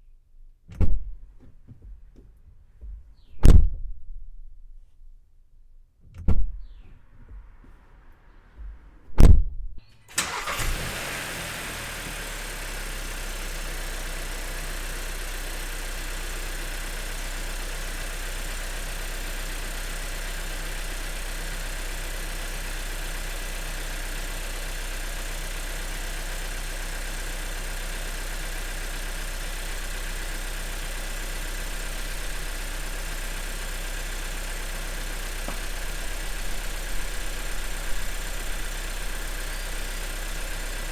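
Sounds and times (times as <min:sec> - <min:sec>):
car door shutting: 0:06.1 - 0:12.6, 0:35.4 - 0:39.2
car engine starting and idling: 0:06.3 - 0:40.9.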